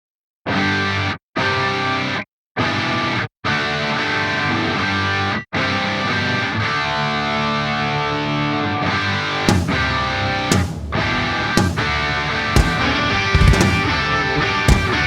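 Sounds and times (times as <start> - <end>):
sharp hits: 9.4 - 15.0.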